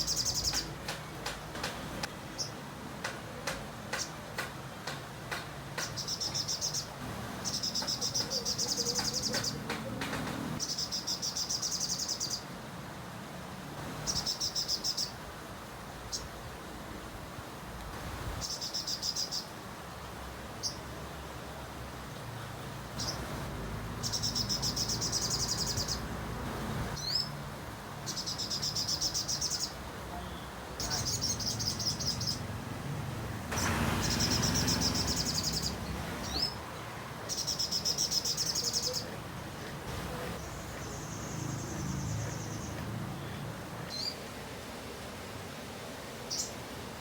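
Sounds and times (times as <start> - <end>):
songbird trills: 5.8 - 10.0, 10.6 - 12.5, 24.0 - 26.1, 28.0 - 32.4, 33.6 - 36.6, 37.3 - 39.7.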